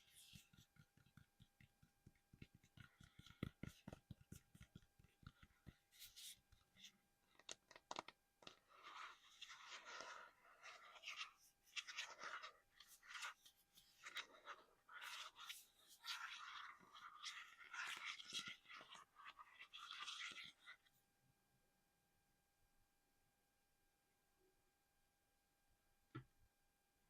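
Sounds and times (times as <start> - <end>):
scratching on small objects: 0.0 - 20.9.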